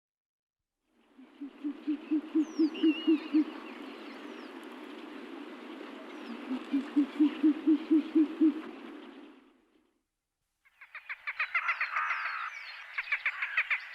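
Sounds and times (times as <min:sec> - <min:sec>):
steady outdoor hiss: 0:00.8 - 0:13.9
animal hooting in rapid pulses: 0:06.4 - 0:08.7.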